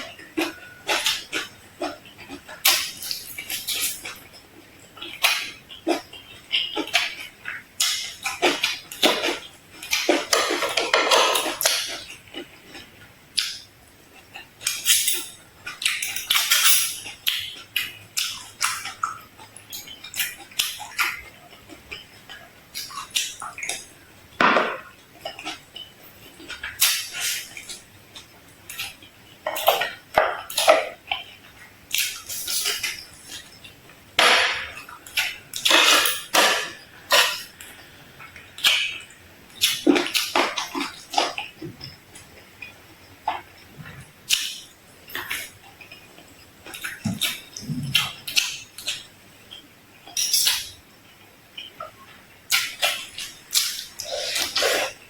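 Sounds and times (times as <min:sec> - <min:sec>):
chewing and crunching food: 0:00.0 - 0:55.0
dishes and utensils clattering: 0:07.8 - 0:12.1, 0:14.6 - 0:17.2, 0:24.4 - 0:24.9, 0:34.2 - 0:37.6.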